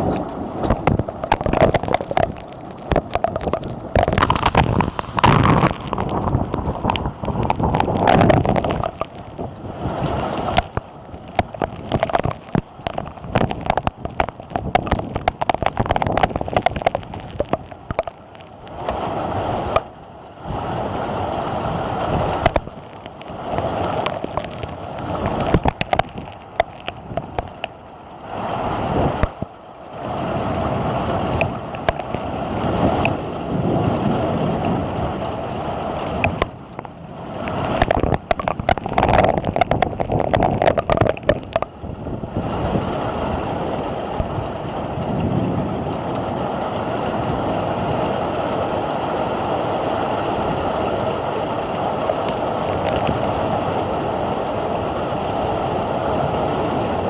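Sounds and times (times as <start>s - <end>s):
raindrops tapping close by: 0.0s - 20.0s, 22.1s - 27.9s, 29.1s - 29.6s, 31.2s - 33.3s, 34.5s - 42.2s, 52.0s - 53.3s
heavy rain in gusting wind: 0.0s - 57.0s.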